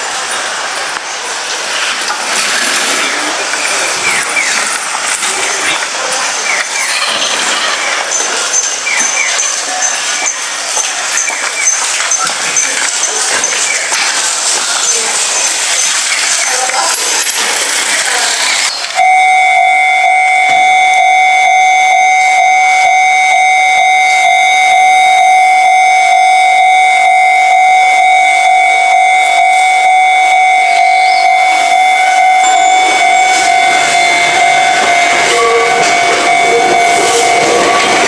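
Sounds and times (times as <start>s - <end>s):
rush of noise: 0.0s - 38.0s
level crossing warning bell: 3.0s - 38.0s
lower tones: 18.7s - 38.0s.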